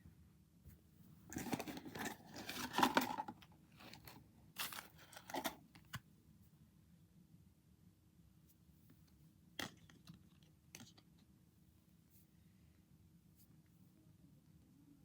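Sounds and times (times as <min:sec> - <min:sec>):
packaging tearing and crinkling: 0:03.8 - 0:05.6.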